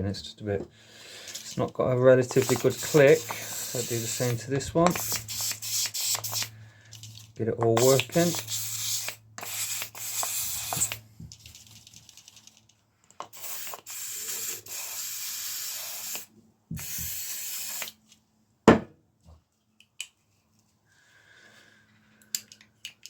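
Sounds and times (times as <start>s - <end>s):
aerosol spray can hissing: 1.3s - 1.6s, 2.3s - 6.5s, 7.8s - 11.0s, 13.2s - 18.0s.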